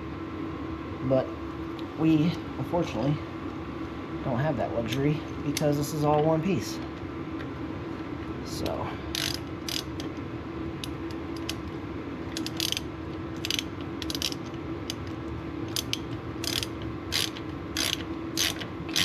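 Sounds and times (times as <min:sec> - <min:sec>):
ratchet wrench clicking: 0:09.1 - 0:10.0, 0:12.3 - 0:15.1, 0:15.7 - 0:19.0.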